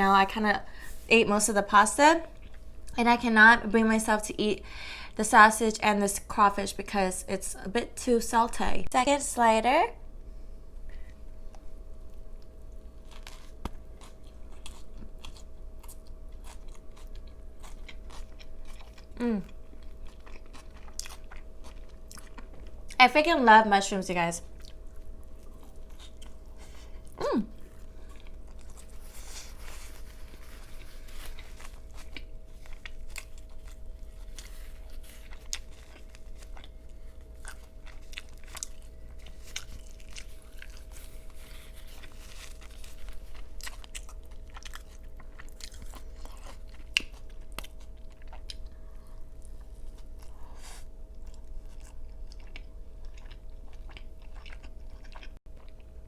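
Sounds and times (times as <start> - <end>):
close-miked chewing: 11.5 - 23.0, 24.4 - 56.0
person humming: 27.2 - 27.6.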